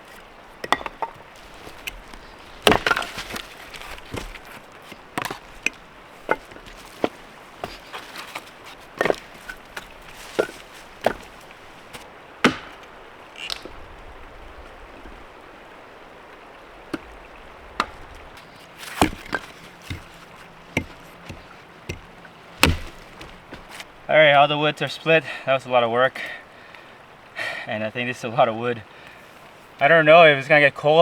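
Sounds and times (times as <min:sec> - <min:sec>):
blade chopping into wood: 0:00.6 - 0:13.7, 0:18.8 - 0:23.8.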